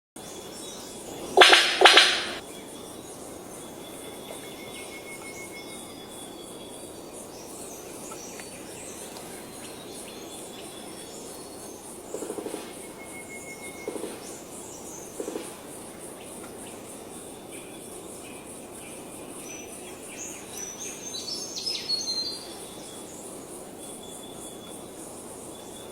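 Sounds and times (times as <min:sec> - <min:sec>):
high insect chorus: 0:00.2 - 0:25.9
thin whistled bird notes: 0:00.4 - 0:11.8, 0:12.7 - 0:15.1.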